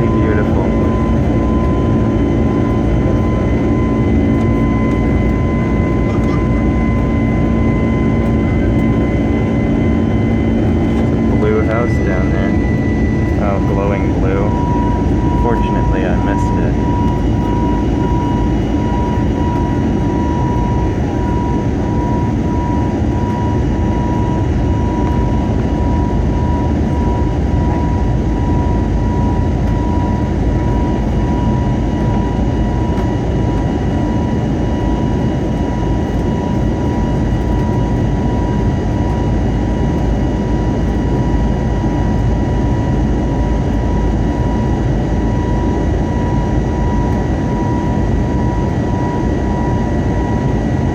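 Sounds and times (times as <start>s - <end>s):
high whine: 0.0s - 33.6s
jet engines and airflow roaring: 0.0s - 50.9s.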